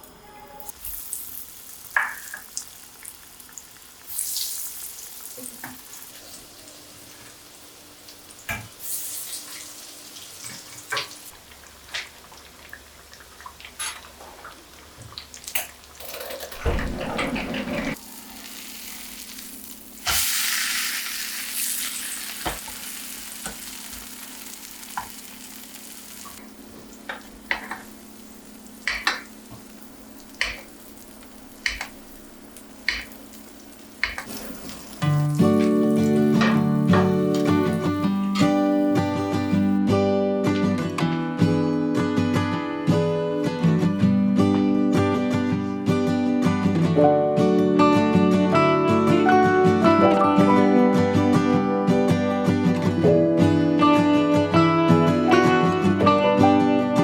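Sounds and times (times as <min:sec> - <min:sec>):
food sizzling in a pan: 0:00.2 - 0:16.0, 0:18.0 - 0:39.8
utensils clicking and tapping: 0:28.8 - 0:29.7, 0:30.3 - 0:30.8, 0:31.6 - 0:37.8.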